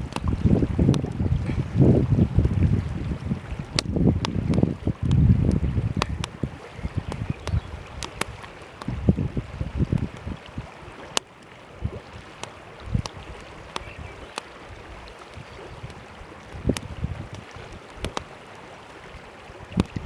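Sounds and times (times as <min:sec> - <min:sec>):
campfire crackling and popping: 0:00.0 - 0:01.6, 0:03.6 - 0:14.6, 0:16.6 - 0:18.4
wind buffeting microphone: 0:00.0 - 0:18.3, 0:19.1 - 0:20.0.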